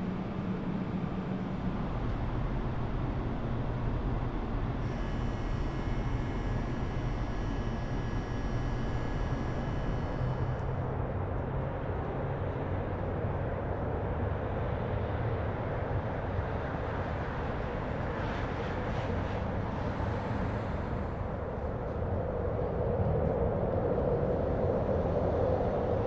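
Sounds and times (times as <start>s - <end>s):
low rumble of vehicles: 0.0s - 26.0s
faint high whine: 1.6s - 11.0s.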